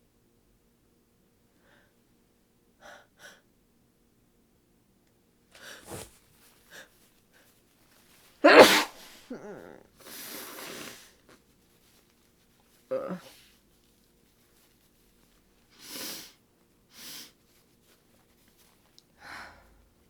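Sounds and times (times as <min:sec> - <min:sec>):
woman sneezing: 0:08.4 - 0:09.8.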